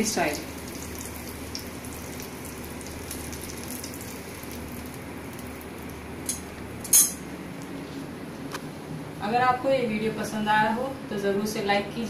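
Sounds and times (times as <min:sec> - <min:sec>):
hot oil sizzling and crackling: 0:00.0 - 0:07.2.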